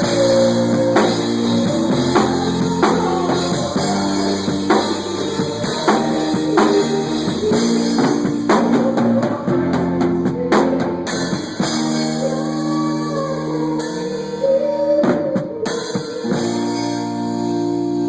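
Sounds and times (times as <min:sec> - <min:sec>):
drum kit beat: 0:00.0 - 0:14.3
live band playing: 0:00.0 - 0:18.0.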